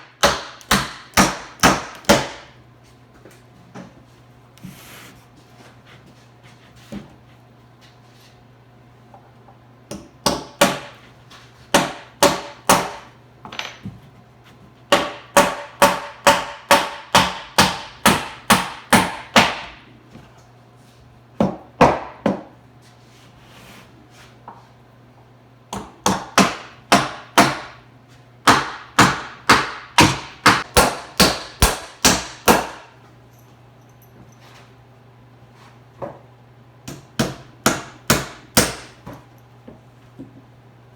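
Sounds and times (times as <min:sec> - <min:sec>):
hammer driving nails into wood: 0:28.4 - 0:32.8.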